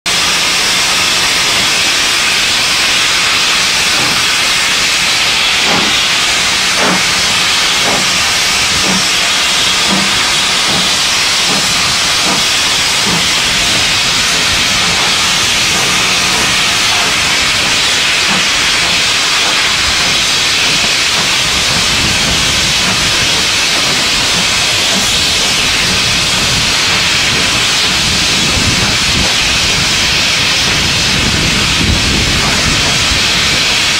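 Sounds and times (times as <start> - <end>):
steam locomotive hissing: 0.1 - 33.9.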